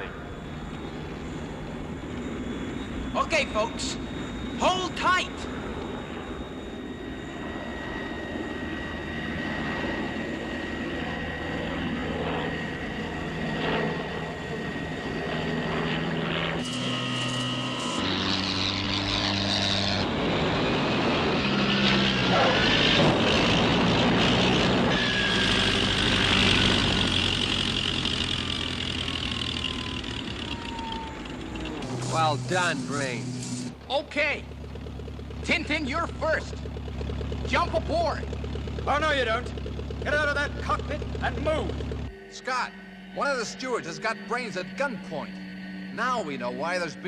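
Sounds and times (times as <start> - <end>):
falling whine: 0.0 - 47.0
propeller engine drone: 0.0 - 47.0
rushing jet noise: 30.4 - 33.8.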